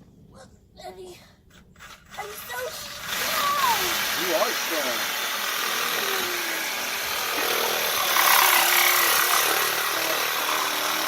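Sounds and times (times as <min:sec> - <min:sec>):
saw cutting plastic pipe: 0:01.8 - 0:11.0.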